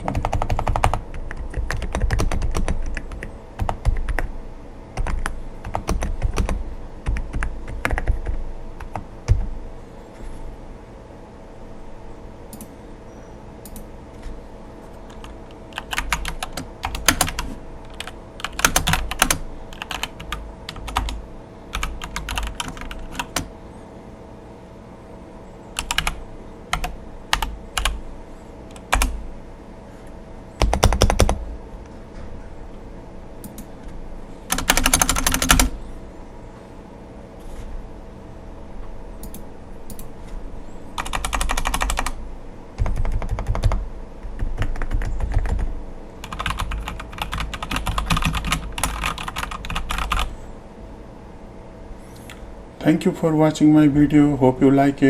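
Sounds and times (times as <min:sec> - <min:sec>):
mechanical keyboard typing: 0:00.0 - 0:04.3, 0:05.0 - 0:09.5, 0:15.1 - 0:23.5, 0:25.8 - 0:28.0, 0:28.7 - 0:29.2, 0:30.6 - 0:31.4, 0:34.5 - 0:35.8, 0:41.0 - 0:42.2, 0:42.8 - 0:50.3.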